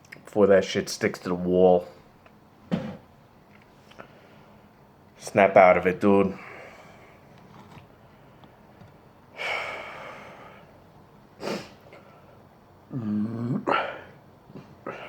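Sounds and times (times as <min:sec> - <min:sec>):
person sniffing: 0:11.4 - 0:11.8
person grunting: 0:12.9 - 0:14.1
person exhaling: 0:12.9 - 0:14.2.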